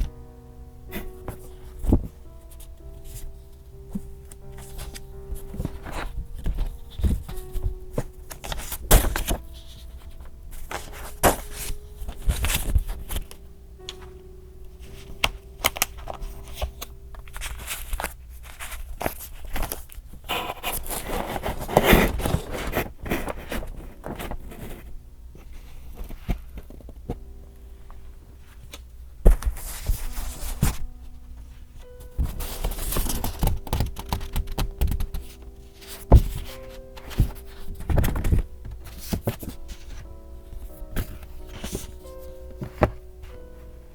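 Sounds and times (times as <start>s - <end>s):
faint held notes: 0.0s - 18.5s
paper rustling: 0.9s - 43.9s
paper taps and clicks: 14.9s - 24.4s, 32.2s - 43.0s.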